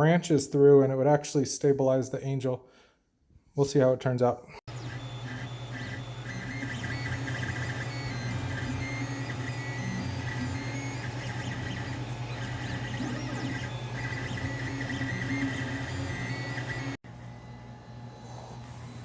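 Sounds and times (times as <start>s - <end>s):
short whining tones: 4.7s - 19.0s
stepper motors humming: 4.7s - 19.0s.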